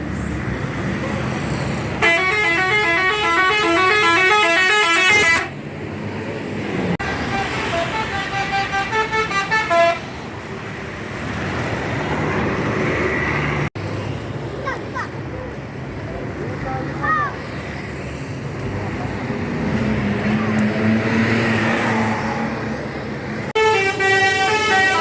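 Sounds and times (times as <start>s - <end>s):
street traffic noise: 0.0s - 25.0s
bus horn playing multi-note tune: 2.0s - 5.6s, 7.0s - 10.1s, 23.6s - 25.0s.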